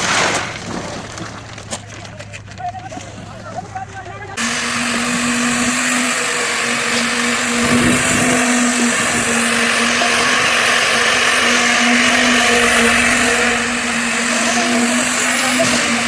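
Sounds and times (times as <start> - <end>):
small motor humming and hissing: 4.4 - 16.0.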